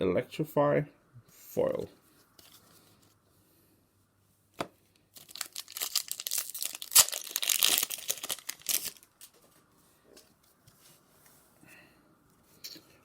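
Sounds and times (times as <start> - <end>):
foil wrapper tearing and crinkling: 5.1 - 9.3.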